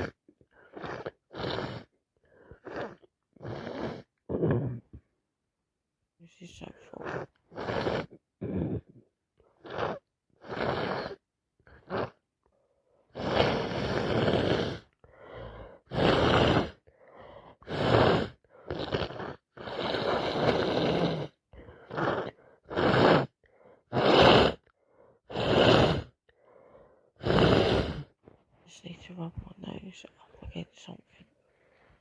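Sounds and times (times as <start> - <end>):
woman blowing nose: 0.0 - 2.0, 7.1 - 9.0, 9.6 - 12.2, 13.1 - 16.8, 17.6 - 24.7, 25.3 - 26.2, 27.2 - 28.2
woman sniffing: 13.1 - 28.2.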